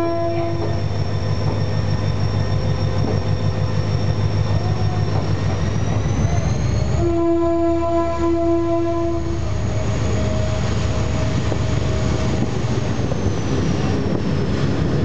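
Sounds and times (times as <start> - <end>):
locomotive horn chord: 0.0 - 0.8, 6.9 - 9.5
diesel engine rumble: 0.4 - 15.0.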